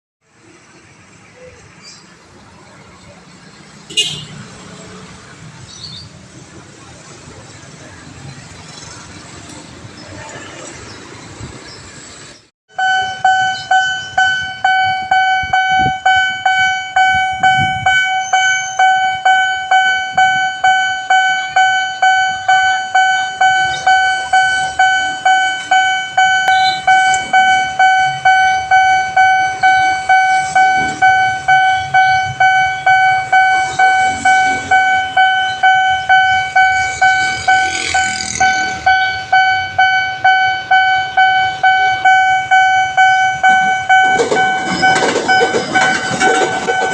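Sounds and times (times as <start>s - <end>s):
level crossing electronic bell: 12.7s - 46.9s.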